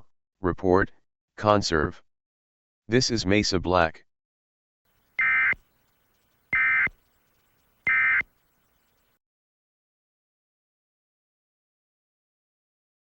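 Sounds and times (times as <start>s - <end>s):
buzzy digital data tone: 5.2s - 9.0s.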